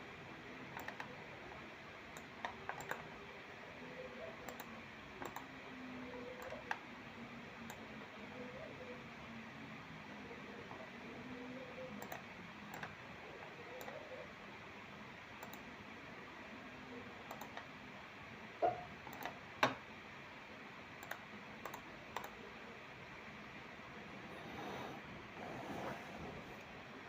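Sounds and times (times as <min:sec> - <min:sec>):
faint steady hiss: 0:00.0 - 0:27.0
computer mouse clicks: 0:00.7 - 0:01.2, 0:02.1 - 0:03.1, 0:04.4 - 0:05.5, 0:06.4 - 0:06.8, 0:07.7 - 0:07.9, 0:12.0 - 0:13.0, 0:13.8 - 0:14.0, 0:15.4 - 0:15.7, 0:17.3 - 0:17.7, 0:18.6 - 0:19.8, 0:21.0 - 0:22.4
keyboard clicks: 0:00.8 - 0:01.2, 0:02.1 - 0:03.1, 0:04.4 - 0:05.5, 0:06.4 - 0:06.8, 0:12.0 - 0:13.0, 0:15.4 - 0:15.7, 0:17.3 - 0:17.7, 0:18.6 - 0:19.8, 0:21.0 - 0:22.4.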